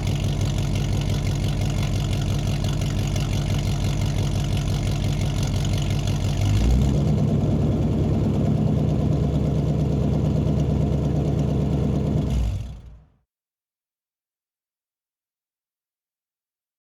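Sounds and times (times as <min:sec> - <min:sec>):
car engine fast idle: 0:00.0 - 0:13.0.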